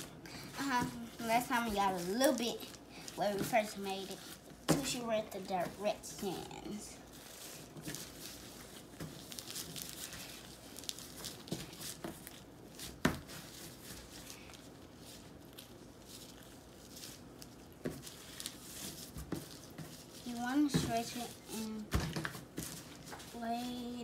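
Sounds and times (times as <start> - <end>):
slime crackling and tearing: 7.0 - 21.8.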